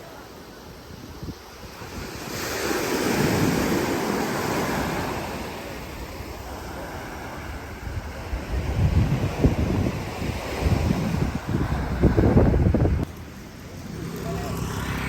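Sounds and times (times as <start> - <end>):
wind buffeting microphone: 0.6 - 15.0
sea wave breaking on shore: 1.7 - 12.8.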